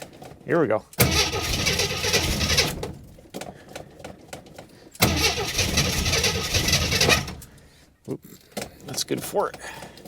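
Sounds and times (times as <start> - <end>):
engine sputters: 1.0 - 3.0, 5.0 - 7.5
starter motor cranking engine: 1.0 - 3.0, 5.0 - 7.5.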